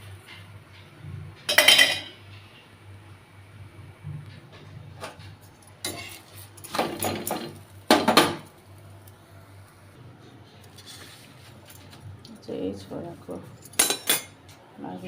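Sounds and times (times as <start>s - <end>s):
dishes and cutlery clinking: 1.5s - 2.5s, 5.1s - 8.5s, 13.6s - 14.4s.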